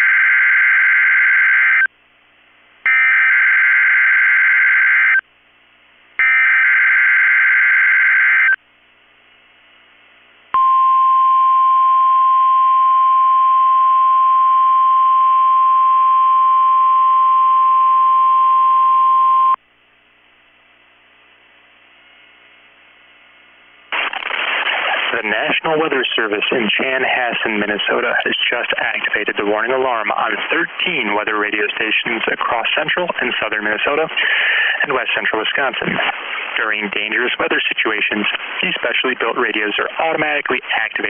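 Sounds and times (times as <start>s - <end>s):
steady loud alarm tone: 2.9s - 5.2s, 6.2s - 8.6s
low static hiss: 19.6s - 41.0s.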